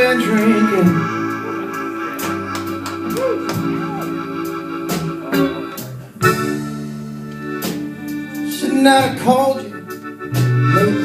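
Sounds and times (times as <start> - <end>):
person singing: 0.0 - 5.7
organ chords: 0.0 - 11.0.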